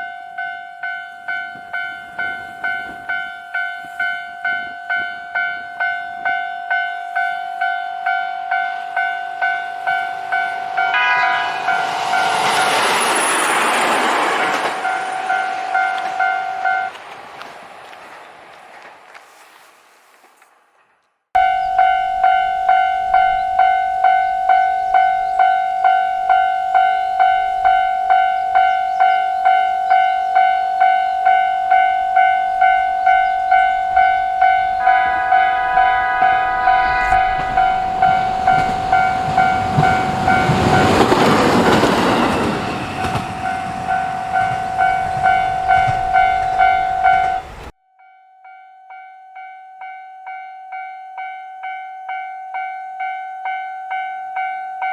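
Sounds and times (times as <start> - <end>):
level-crossing alarm bell: 0.0 - 17.0, 21.4 - 47.7, 48.5 - 54.9
train wheel and engine noise: 0.0 - 19.8, 21.7 - 47.7
train horn: 7.2 - 17.0, 32.7 - 47.7.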